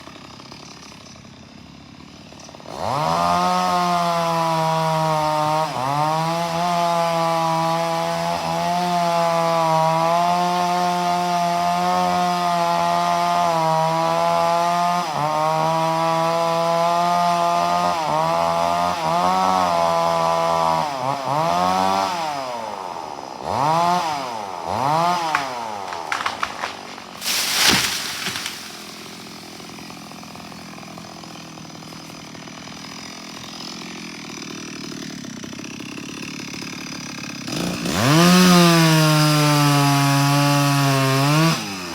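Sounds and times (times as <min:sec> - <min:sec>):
chainsaw cutting wood: 0:00.0 - 0:41.9.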